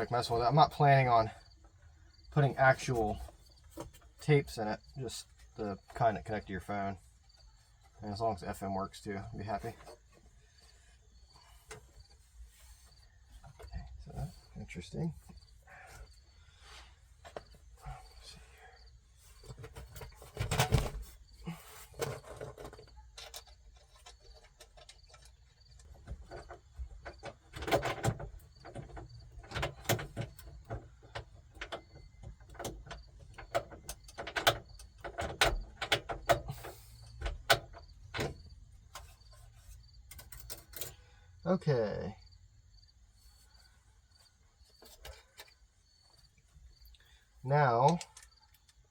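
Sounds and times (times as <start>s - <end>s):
clicks and rattles of car radio parts: 19.2s - 41.1s, 44.7s - 46.0s, 46.7s - 48.9s.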